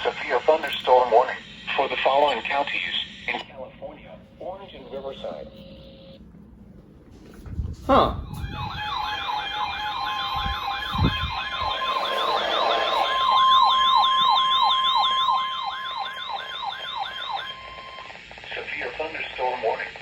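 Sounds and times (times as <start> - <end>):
steady warning tone: 7.9 - 20.0
warbling siren alarm: 8.0 - 18.2.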